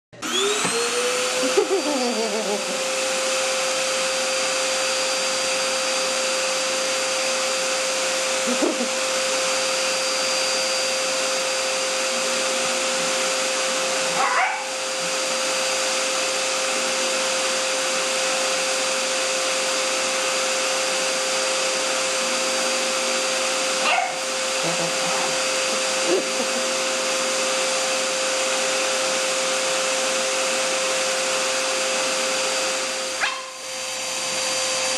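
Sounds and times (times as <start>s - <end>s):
vacuum cleaner whining: 0.2s - 34.9s
dog yelping: 14.1s - 14.8s, 23.8s - 26.6s, 33.2s - 33.6s.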